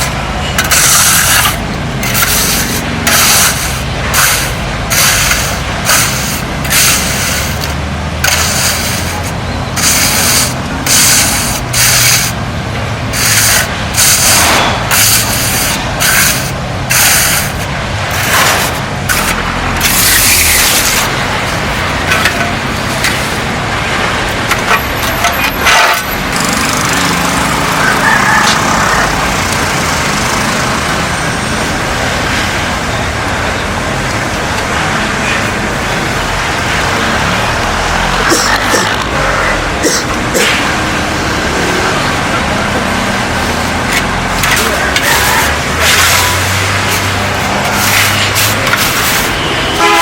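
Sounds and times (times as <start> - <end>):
hand tool scraping concrete: 0.0 - 12.4, 13.1 - 23.5, 24.4 - 26.9, 43.5 - 49.4.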